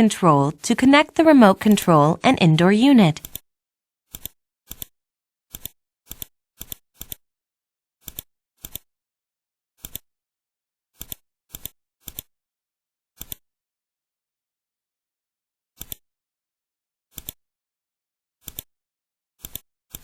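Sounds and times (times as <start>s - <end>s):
computer mouse clicking: 4.1s - 4.9s, 5.5s - 7.2s, 8.0s - 8.9s, 11.0s - 12.3s, 13.2s - 13.4s, 15.8s - 16.0s, 17.2s - 17.4s, 18.4s - 18.7s, 19.4s - 20.0s.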